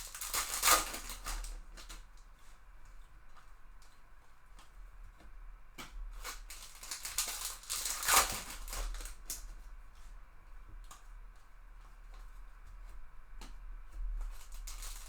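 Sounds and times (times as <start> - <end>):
foil wrappers crinkling and tearing: 0.0 - 2.0, 6.2 - 9.6, 14.3 - 15.0.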